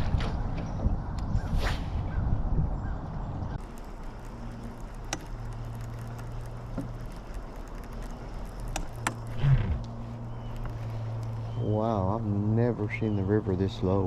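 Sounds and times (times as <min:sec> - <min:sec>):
sharp clicks: 0:03.6 - 0:12.4
small motor humming: 0:03.6 - 0:12.4.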